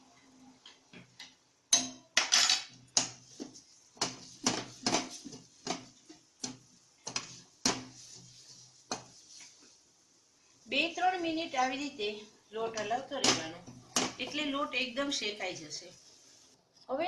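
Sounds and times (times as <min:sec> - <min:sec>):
spoon scraping a pan: 0:02.4 - 0:09.9.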